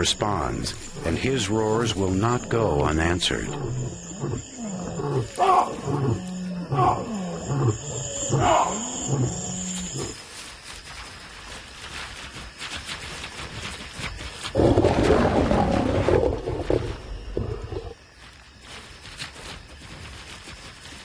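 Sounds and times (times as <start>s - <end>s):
lion snarling: 3.2s - 10.2s
lions roaring: 3.5s - 10.2s, 14.6s - 18.0s.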